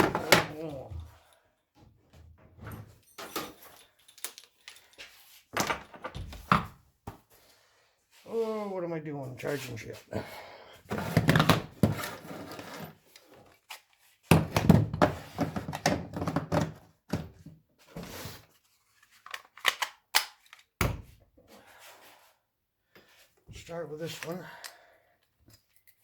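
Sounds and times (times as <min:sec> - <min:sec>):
plastic tools clattering: 0:02.8 - 0:06.3, 0:10.9 - 0:17.5, 0:19.0 - 0:20.8
batteries clicking onto chargers: 0:04.0 - 0:04.8, 0:19.2 - 0:20.8.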